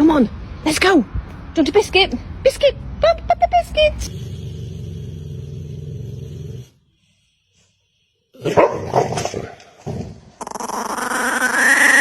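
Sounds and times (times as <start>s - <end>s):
dog growling: 4.0s - 6.8s
dog growling barks: 4.0s - 6.8s, 8.4s - 10.2s
dog whining cry: 10.4s - 12.0s.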